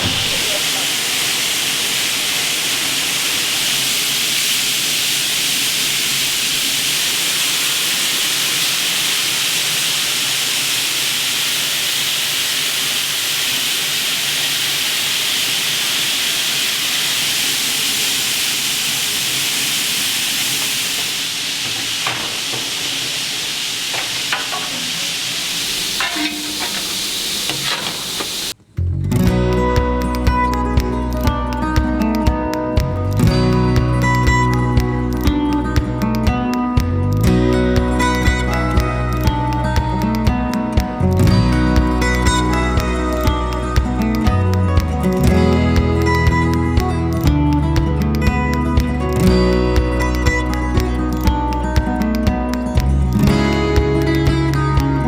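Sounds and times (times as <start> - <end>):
steam locomotive hissing: 0.0 - 28.6
faint clicks: 29.7 - 55.0.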